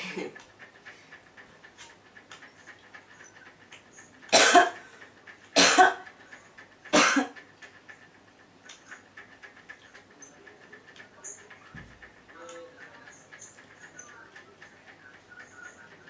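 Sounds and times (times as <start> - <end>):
man coughing: 4.3 - 4.8, 5.6 - 6.1, 7.0 - 7.4.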